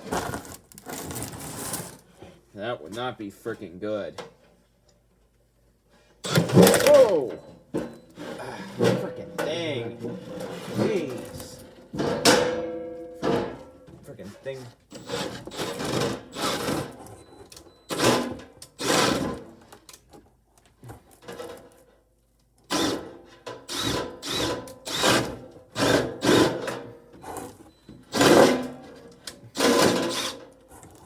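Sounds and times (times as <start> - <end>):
power drill boring through plywood: 6.2 - 7.3, 14.9 - 17.1, 17.9 - 19.4, 22.7 - 23.1, 23.7 - 27.5, 29.6 - 30.4.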